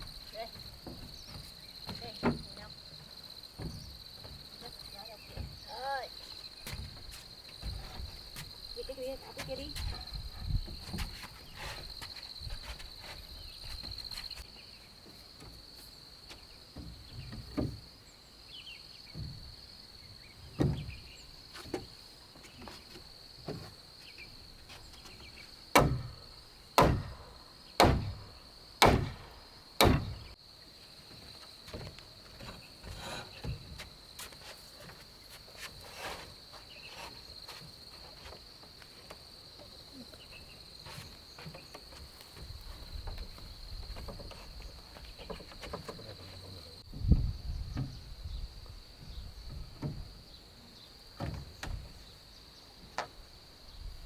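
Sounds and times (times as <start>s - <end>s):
insects chirring: 0.0s - 54.0s
heavy blows on timber: 25.7s - 30.4s.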